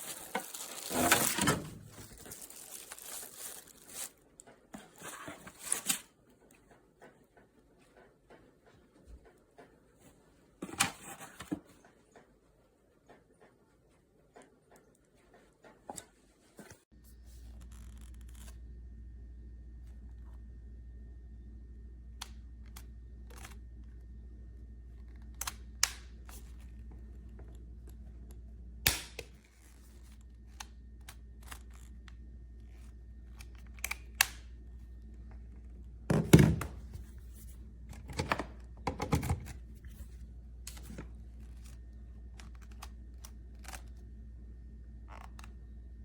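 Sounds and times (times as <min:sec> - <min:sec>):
objects being handled: 0:00.0 - 0:04.2
steady low hum: 0:16.8 - 0:46.0.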